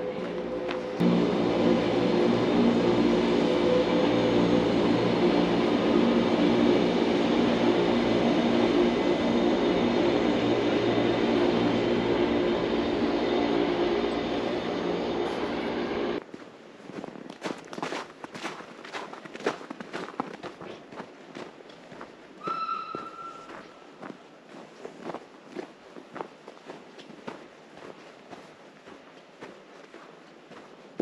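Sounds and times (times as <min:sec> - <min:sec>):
electric train running: 0:00.0 - 0:16.2
pitched motor hum: 0:00.0 - 0:16.2.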